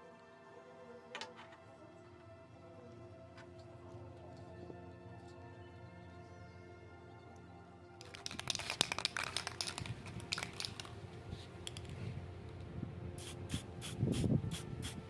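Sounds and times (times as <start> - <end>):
small parts clicking and scratching: 8.0 - 12.1.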